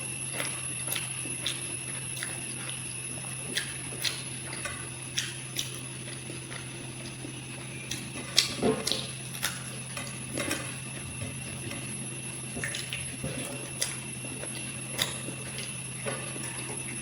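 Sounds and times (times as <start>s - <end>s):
person chewing: 0.3s - 11.9s.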